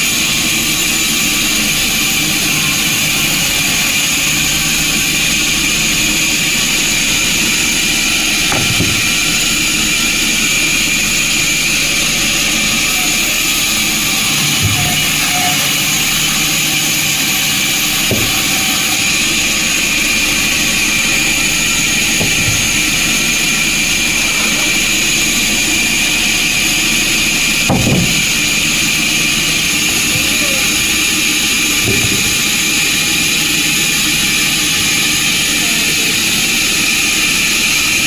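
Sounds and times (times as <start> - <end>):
sawmill machinery hissing: 0.0 - 38.0
knocks: 8.5 - 9.4, 18.0 - 18.9, 22.0 - 23.0, 27.6 - 28.5, 31.8 - 32.6.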